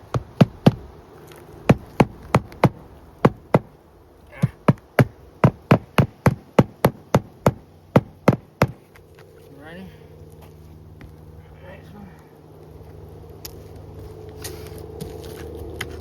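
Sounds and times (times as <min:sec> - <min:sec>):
hammer driving nails: 0:04.6 - 0:08.8.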